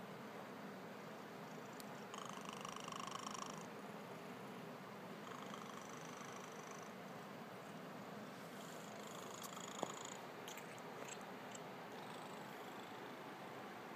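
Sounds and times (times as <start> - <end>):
cat snoring: 1.4 - 3.7, 5.2 - 7.0, 8.7 - 13.1.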